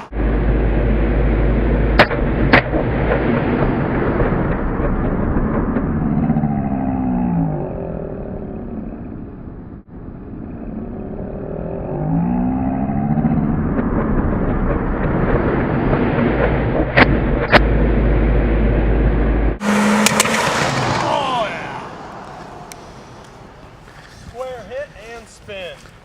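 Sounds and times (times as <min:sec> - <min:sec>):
suv driving past: 0:17.6 - 0:24.3.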